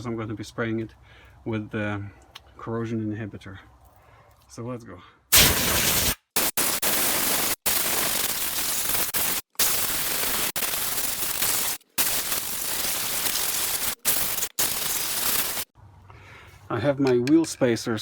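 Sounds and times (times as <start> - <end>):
compressed air blow gun hissing: 5.3 - 15.7.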